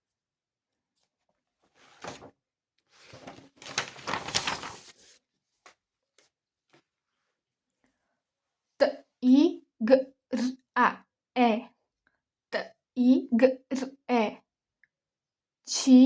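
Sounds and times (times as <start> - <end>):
paper page rustling: 1.0 - 6.9.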